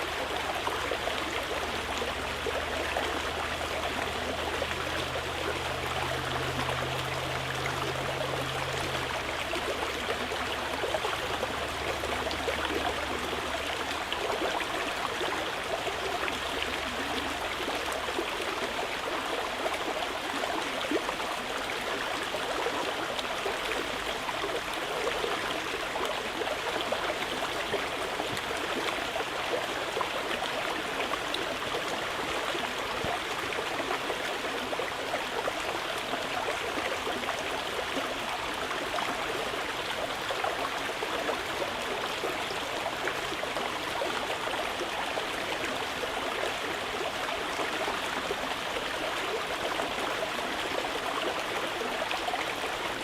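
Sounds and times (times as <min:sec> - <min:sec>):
river rushing: 0:01.9 - 0:15.2.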